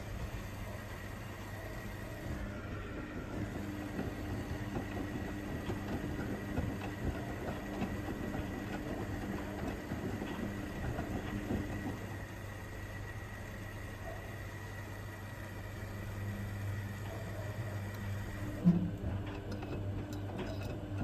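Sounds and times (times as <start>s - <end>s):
washing machine motor humming: 0.0s - 21.0s
tumbling load clicking and rattling: 3.2s - 12.4s.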